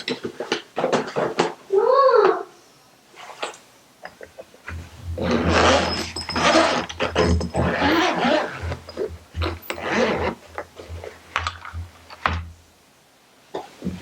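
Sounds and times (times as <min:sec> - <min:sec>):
plastic and cardboard rustling: 0:04.6 - 0:12.6.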